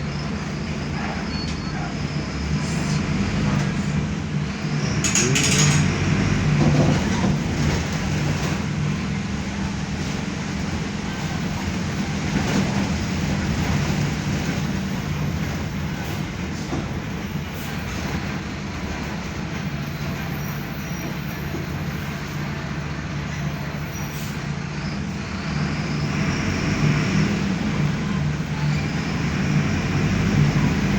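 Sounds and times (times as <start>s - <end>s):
bus diesel engine drone: 0.0s - 30.9s
road and body noise: 1.1s - 23.8s.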